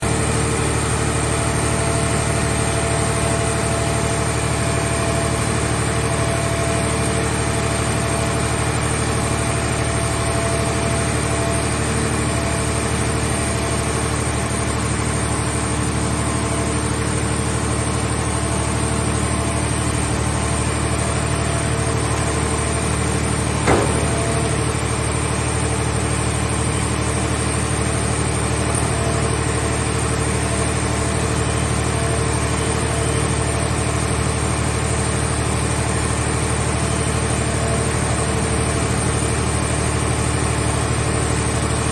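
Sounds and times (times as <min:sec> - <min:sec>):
hydraulic machine drone with whine: 0:00.0 - 0:41.9
short sharp knock: 0:23.6 - 0:24.7.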